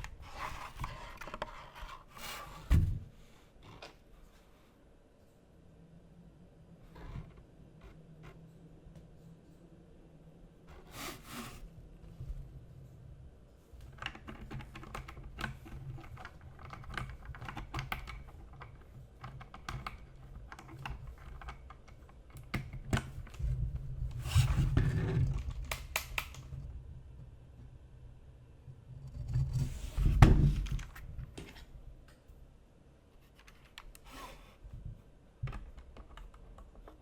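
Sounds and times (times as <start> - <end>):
mechanical keyboard typing: 14.0 - 22.7.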